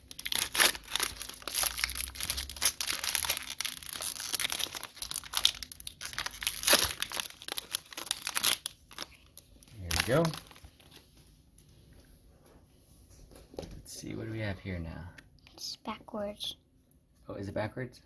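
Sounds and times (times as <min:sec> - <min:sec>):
plastic wrapper crinkling and tearing: 0:00.0 - 0:11.0.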